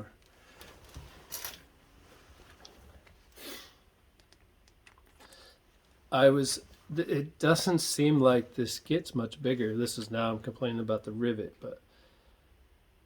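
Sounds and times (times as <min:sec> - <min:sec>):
faint clicks and rustles: 0:00.0 - 0:03.4, 0:04.0 - 0:06.9.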